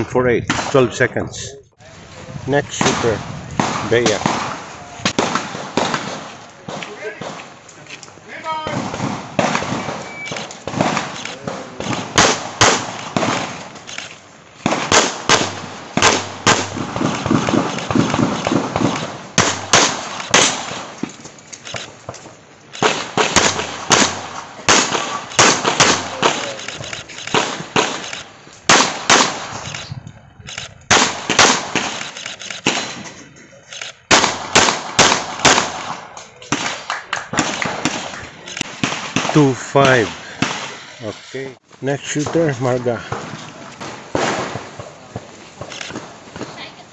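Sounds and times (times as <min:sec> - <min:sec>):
handgun shots: 0:09.4 - 0:20.9, 0:22.8 - 0:29.9.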